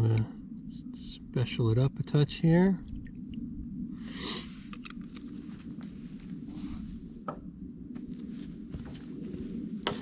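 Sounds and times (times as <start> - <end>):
low background rumble: 0.0 - 10.0.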